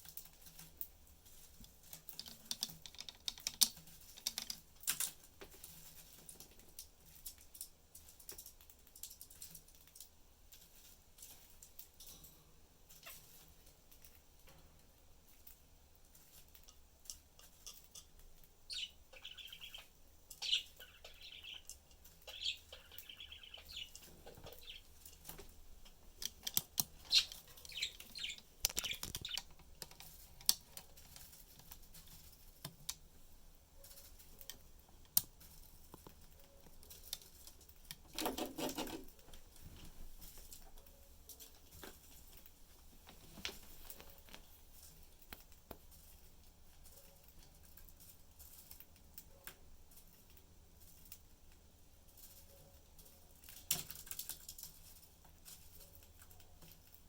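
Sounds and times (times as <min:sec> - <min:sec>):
beaks and feet tapping cage: 0:00.0 - 0:57.0
budgies chirping: 0:18.6 - 0:25.4, 0:26.9 - 0:29.6.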